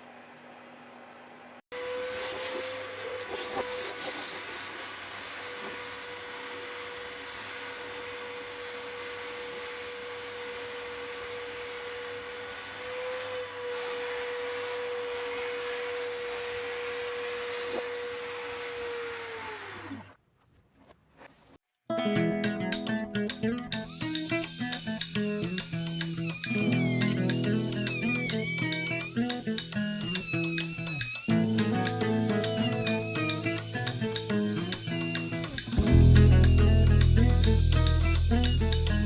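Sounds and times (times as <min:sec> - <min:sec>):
electric router whining: 0:23.7 - 0:39.0.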